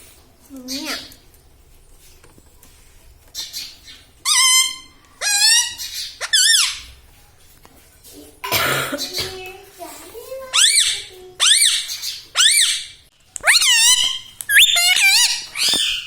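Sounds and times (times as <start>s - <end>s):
parakeet squeaky calls: 3.4s - 7.0s, 10.5s - 16.0s.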